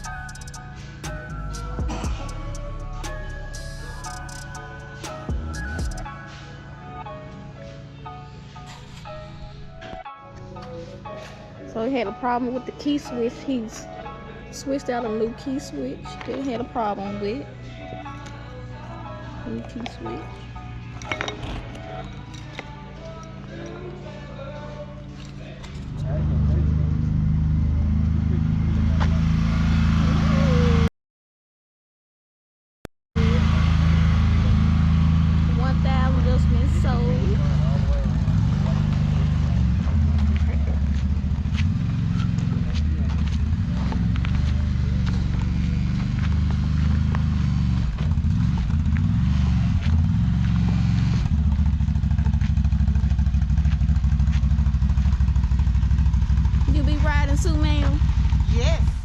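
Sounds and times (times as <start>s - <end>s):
vehicle engine idling: 10.7s - 30.8s, 33.2s - 59.0s.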